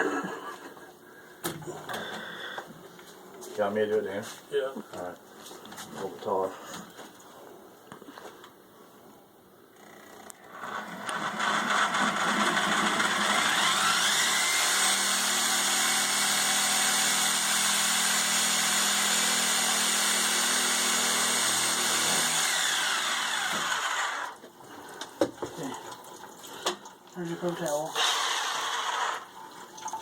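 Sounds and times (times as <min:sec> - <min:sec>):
electric motor whine: 0:10.7 - 0:19.9, 0:21.0 - 0:24.4.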